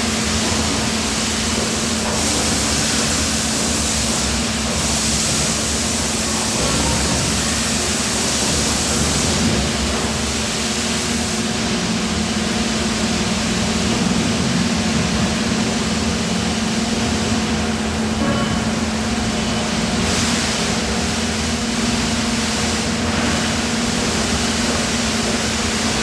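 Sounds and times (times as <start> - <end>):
factory machinery hum: 0.0 - 26.0
hiss of air: 0.6 - 11.6.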